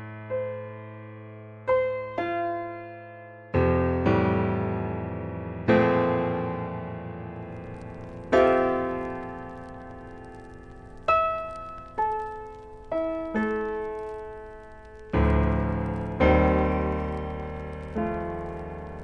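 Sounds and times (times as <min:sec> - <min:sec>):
gentle solo piano: 0:00.0 - 0:15.5.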